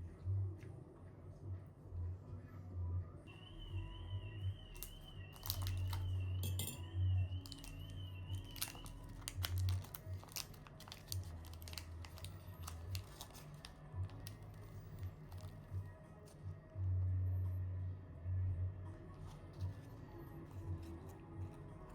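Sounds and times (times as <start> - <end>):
quiet background music: 0.0 - 21.9
light crinkling: 4.7 - 6.3, 7.3 - 16.6.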